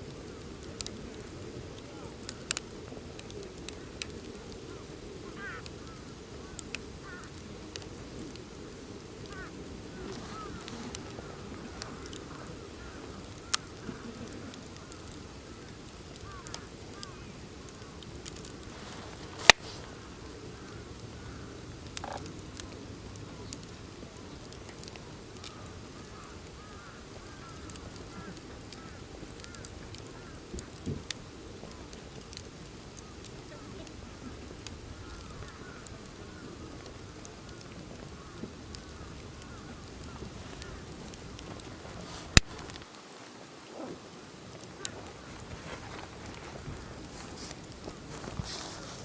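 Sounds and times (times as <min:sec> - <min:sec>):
low wind rumble: 0:00.0 - 0:42.9
campfire crackling: 0:00.0 - 0:49.0
fire popping: 0:00.0 - 0:49.0.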